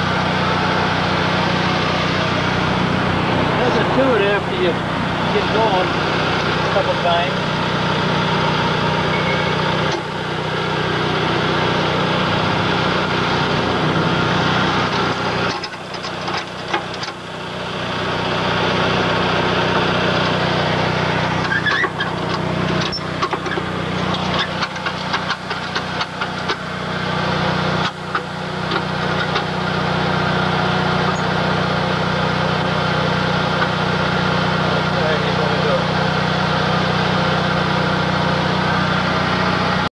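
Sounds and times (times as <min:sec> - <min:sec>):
vehicle engine running: 0:00.0 - 0:39.9
sharp knocks and rattles: 0:21.4 - 0:26.6.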